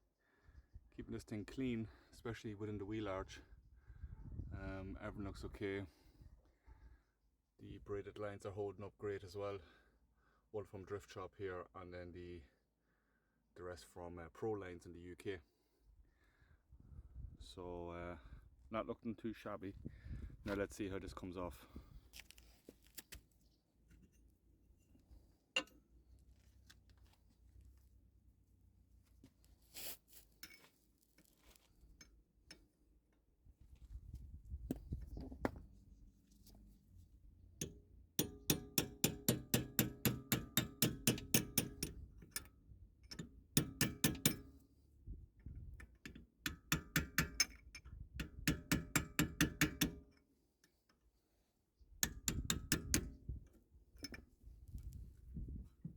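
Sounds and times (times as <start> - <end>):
tools clanking on metal: 25.6 - 25.8
hammer striking metal: 38.2 - 41.9.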